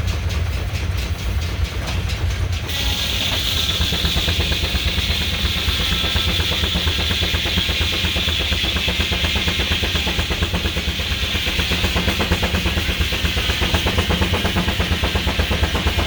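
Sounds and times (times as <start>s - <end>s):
steam engine running: 0.0s - 16.0s.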